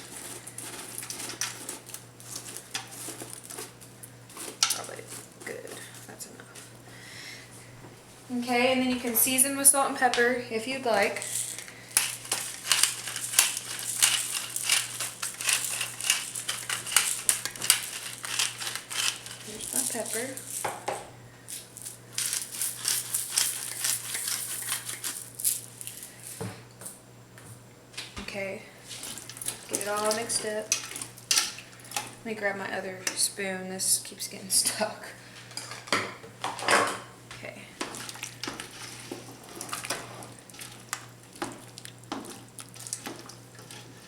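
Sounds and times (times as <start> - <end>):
pepper grinder crackly rattling: 0.0 - 6.8, 9.0 - 20.8, 21.5 - 26.2, 28.9 - 32.3, 37.8 - 44.0
steady low hum: 0.0 - 44.0.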